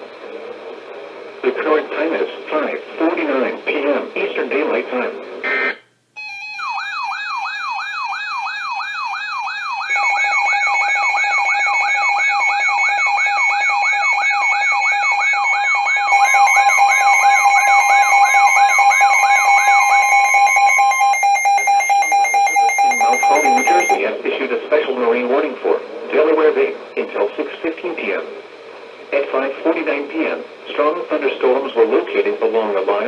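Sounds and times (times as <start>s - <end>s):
steady electronic alarm tones: 5.5s - 24.0s
siren-like electronic sweep: 6.4s - 24.0s.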